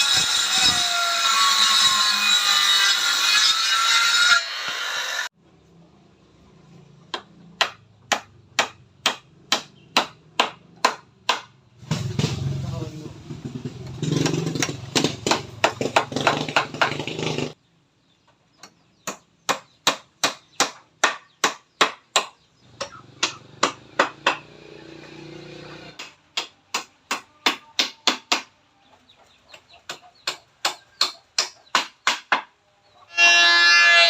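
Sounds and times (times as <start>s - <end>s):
hammer striking wood: 7.1s - 12.0s, 14.2s - 17.4s, 18.6s - 24.6s, 26.0s - 28.5s, 29.9s - 32.6s.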